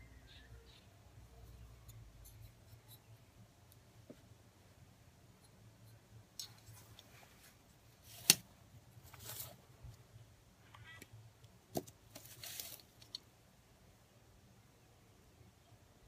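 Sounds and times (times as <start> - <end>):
rustling: 5.9 - 10.0, 11.8 - 13.2.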